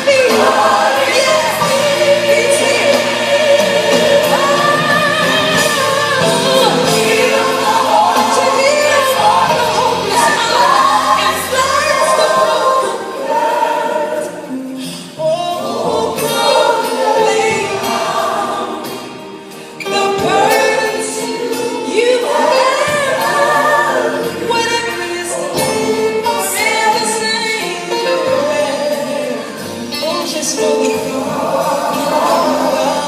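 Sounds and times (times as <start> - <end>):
gospel choir singing: 0.0 - 33.0.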